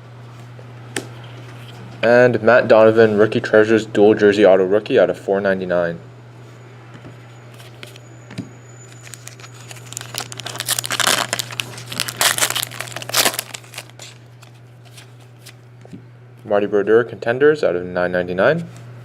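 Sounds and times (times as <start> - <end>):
steady low hum: 0.0 - 19.0
card pack wrapper tearing and crinkling: 8.9 - 15.6.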